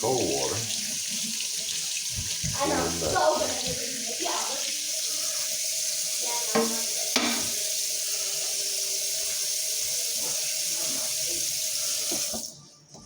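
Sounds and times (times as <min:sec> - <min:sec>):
tap water running into a pot: 0:00.0 - 0:12.6.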